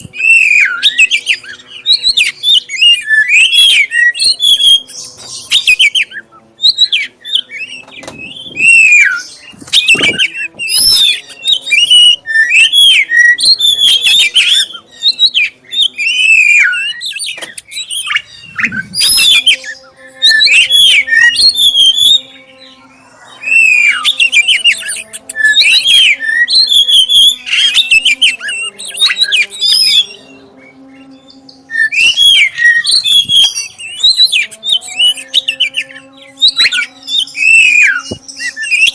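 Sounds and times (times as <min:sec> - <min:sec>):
bird singing whistled phrases: 0:00.0 - 0:22.3, 0:31.0 - 0:38.9.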